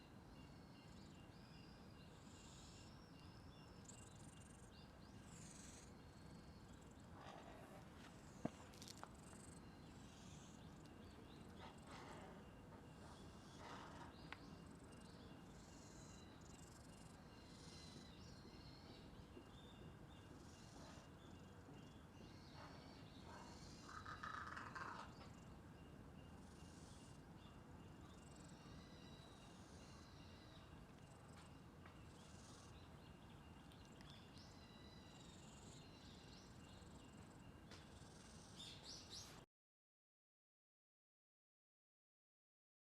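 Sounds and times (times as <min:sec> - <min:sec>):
cat purring: 0:03.8 - 0:25.5, 0:26.3 - 0:38.8.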